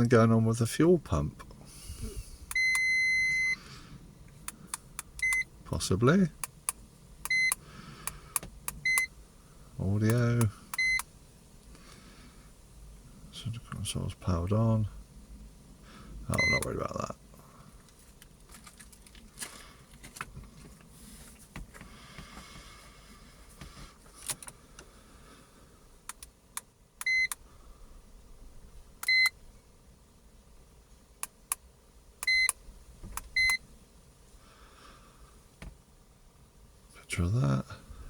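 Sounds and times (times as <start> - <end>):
short high beeps: 2.5 - 3.6, 16.3 - 16.7.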